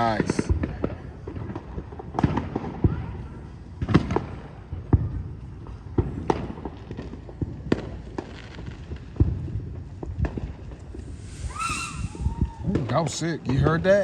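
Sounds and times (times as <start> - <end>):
fireworks bangs and crackles: 0.0 - 14.0.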